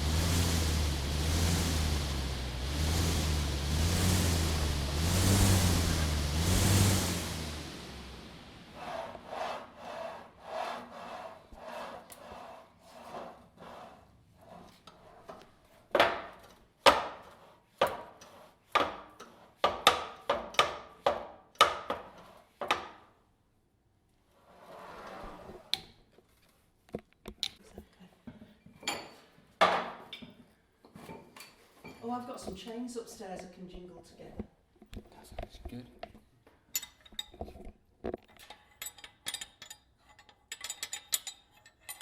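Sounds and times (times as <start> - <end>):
scraping strokes: 8.8 - 15.3.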